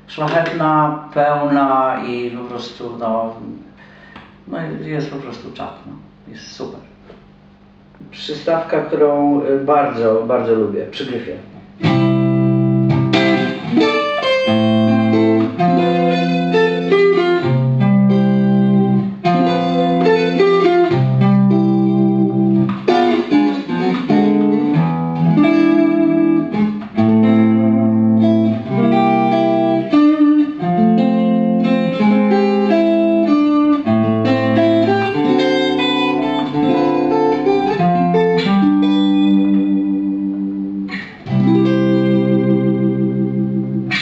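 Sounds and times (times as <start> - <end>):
electric guitar chords: 11.4 - 44.0.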